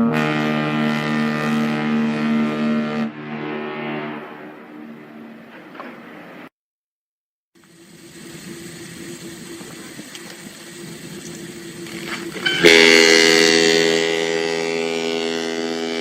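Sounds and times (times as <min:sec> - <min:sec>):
ship's horn blast: 0:00.0 - 0:06.1, 0:12.0 - 0:16.0
low rumble: 0:03.1 - 0:05.8.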